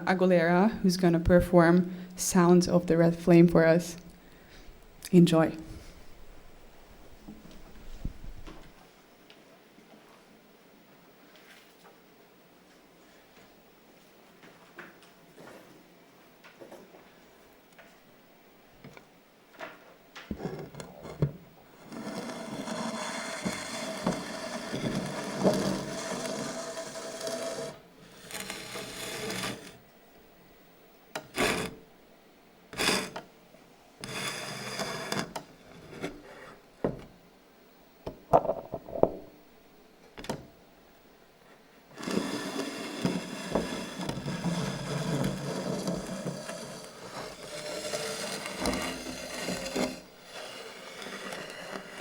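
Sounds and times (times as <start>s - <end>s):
scraping and rubbing by hand: 20.3s - 29.8s, 32.8s - 33.2s, 34.0s - 36.6s, 38.4s - 39.3s, 41.9s - 52.0s.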